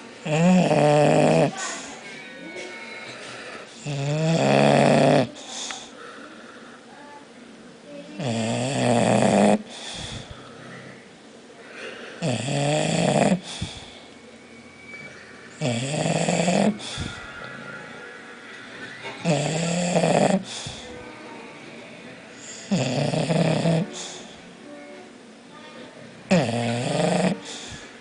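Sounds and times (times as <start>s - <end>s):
dog snoring: 0.2s - 1.8s, 3.6s - 5.5s, 8.2s - 11.0s, 12.2s - 14.0s, 15.6s - 17.3s, 19.2s - 21.0s, 22.4s - 24.3s, 26.3s - 27.8s
dog breathing quietly: 9.6s - 14.2s, 19.2s - 21.4s, 22.4s - 24.5s.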